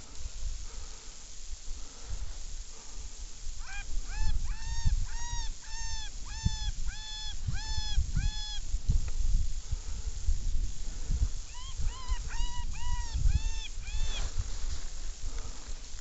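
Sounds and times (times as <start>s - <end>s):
low wind-like rumble: 0.0s - 16.0s
short pitched calls: 3.6s - 8.7s, 11.5s - 14.4s.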